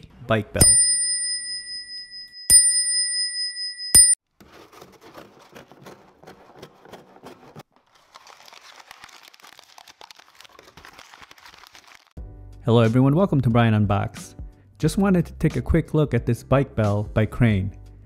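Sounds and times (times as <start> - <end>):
bicycle bell ringing: 0.6 - 4.2.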